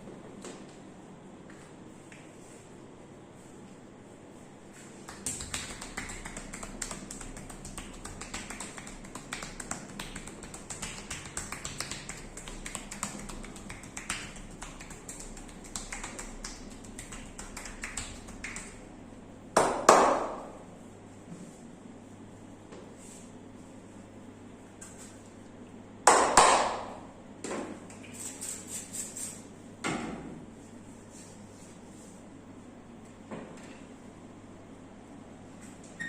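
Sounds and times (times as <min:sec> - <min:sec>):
hands tapping on body: 0:05.0 - 0:18.8.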